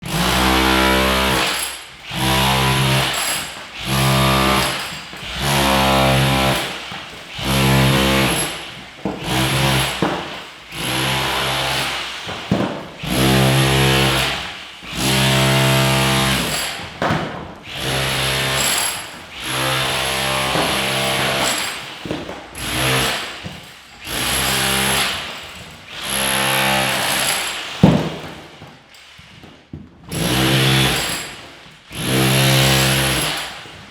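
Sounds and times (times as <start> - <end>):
demolition hammer hammering: 0.0 - 28.8, 30.0 - 33.9.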